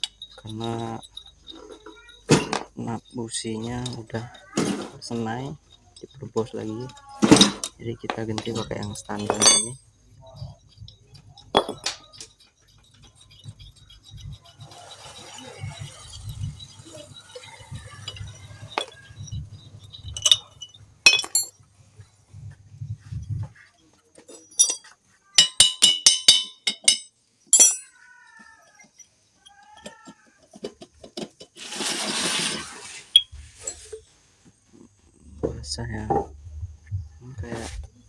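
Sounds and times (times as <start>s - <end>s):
metal tools clinking: 0.0s - 31.6s, 33.1s - 34.1s.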